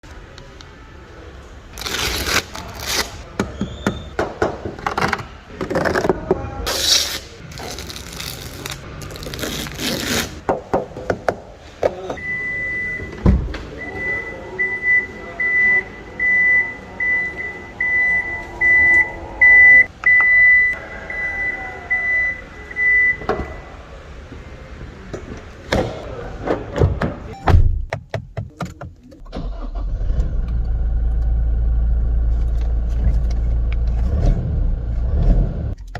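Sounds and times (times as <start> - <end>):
high beeping chime: 13.8 - 23.2
car engine starting and running: 29.2 - 35.9.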